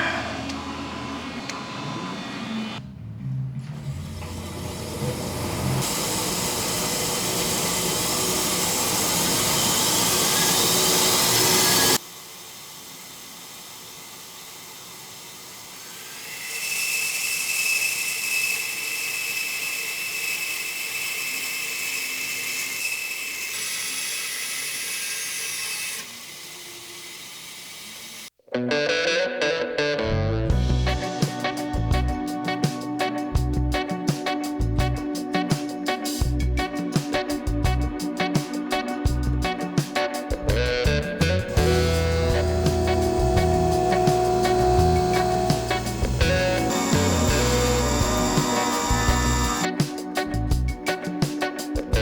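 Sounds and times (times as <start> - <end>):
milling machine cutting metal: 3.8 - 28.3, 41.5 - 49.8.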